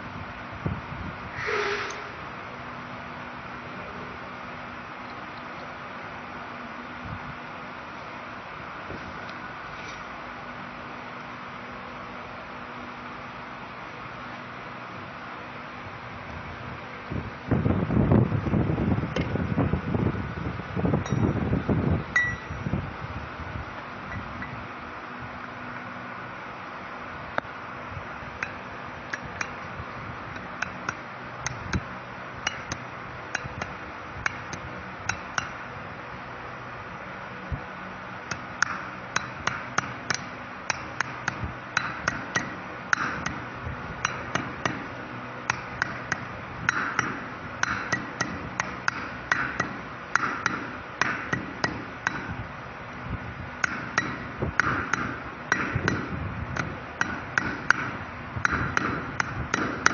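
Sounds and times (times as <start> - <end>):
hammer tapping on steel: 22.1 - 22.6, 30.4 - 35.6, 38.3 - 52.4, 53.6 - 59.9.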